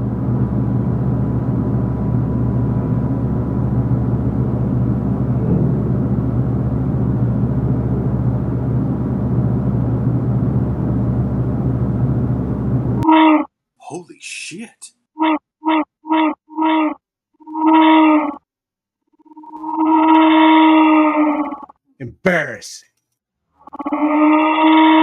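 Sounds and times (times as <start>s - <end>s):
steady low machine drone: 0.0s - 13.0s.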